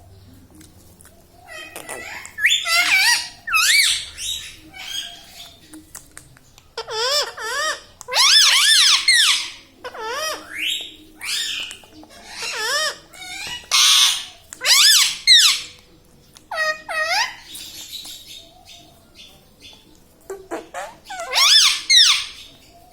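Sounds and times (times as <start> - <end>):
parrot talking and chattering: 1.4 - 5.9, 6.7 - 15.8, 16.5 - 17.9, 20.2 - 22.6
parrot screech: 1.5 - 4.0, 20.8 - 22.5.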